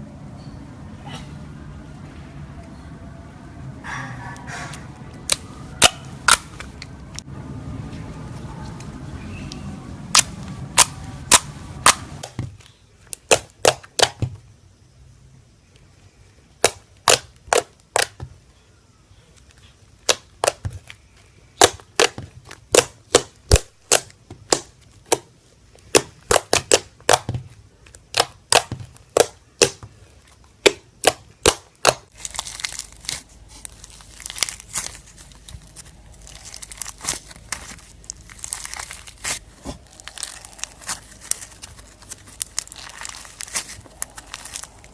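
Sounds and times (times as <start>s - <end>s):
slime crinkling crackle: 25.8s - 44.9s.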